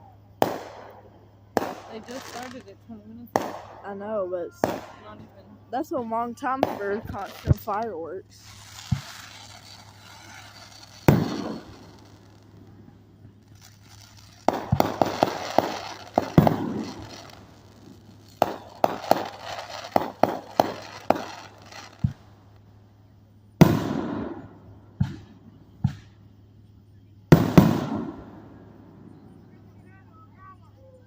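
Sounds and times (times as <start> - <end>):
fireworks bangs: 0.0 - 22.6, 23.6 - 26.3, 27.3 - 30.0
fireworks crackling: 0.0 - 22.9, 23.6 - 26.3, 27.3 - 30.6.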